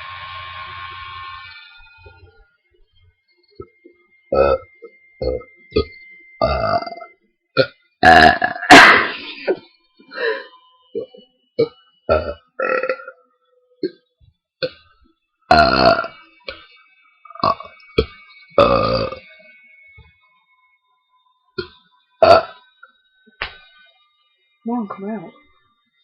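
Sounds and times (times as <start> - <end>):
person burping: 4.4 - 9.6, 11.0 - 13.1, 15.5 - 16.1, 17.4 - 19.2, 21.6 - 22.6.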